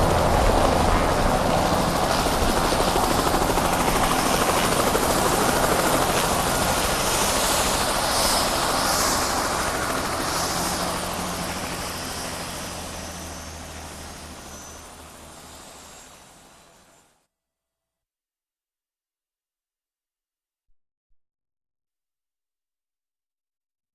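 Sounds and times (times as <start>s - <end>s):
helicopter rotor and engine: 0.0s - 17.2s.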